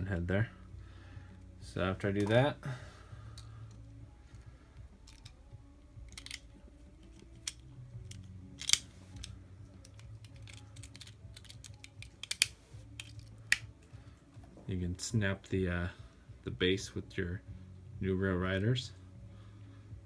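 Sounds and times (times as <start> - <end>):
toy car parts clicking: 5.0 - 5.4, 6.0 - 13.7.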